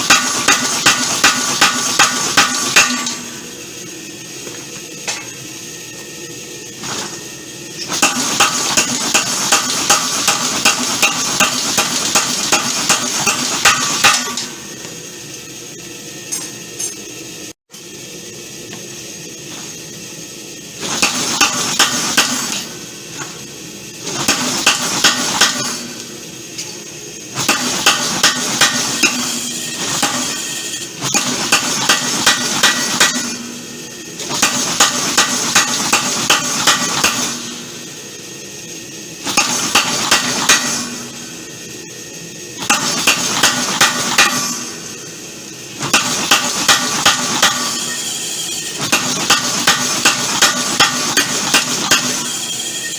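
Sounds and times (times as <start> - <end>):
power hammer pounding hot steel: 0.0 - 3.6, 6.8 - 14.9, 20.8 - 37.9, 39.2 - 41.4, 42.6 - 52.9.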